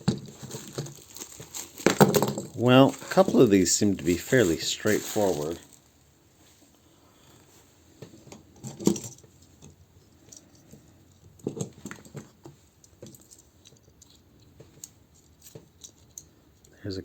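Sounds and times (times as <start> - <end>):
plastic parts clicking and rattling: 0.0 - 3.5, 8.1 - 16.8.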